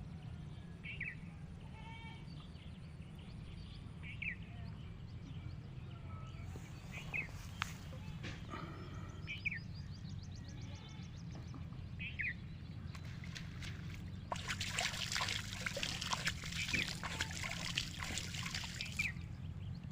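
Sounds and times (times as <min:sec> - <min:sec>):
water splashing and trickling: 0:12.9 - 0:19.9
bird chirping and trilling: 0:13.0 - 0:19.6.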